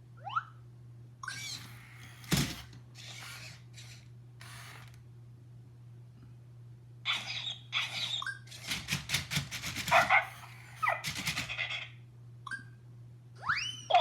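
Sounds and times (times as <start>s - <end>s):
robot dog barking: 9.8s - 11.2s.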